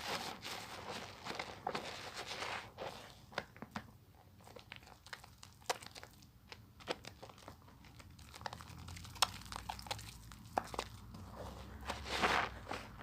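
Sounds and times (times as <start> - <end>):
soap lathering crackles: 4.4 - 11.1.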